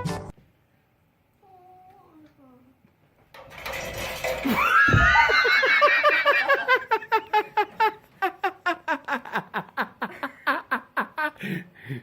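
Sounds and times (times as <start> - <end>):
rapid rhythmic laughter: 5.2 - 11.4.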